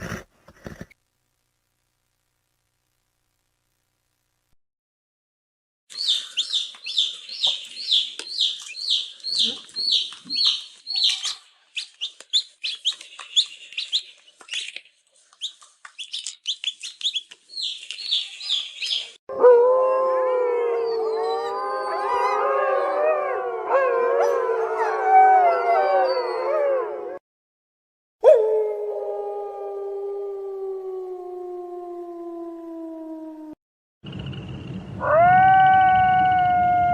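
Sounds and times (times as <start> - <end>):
wolves howling: 19.3 - 27.2.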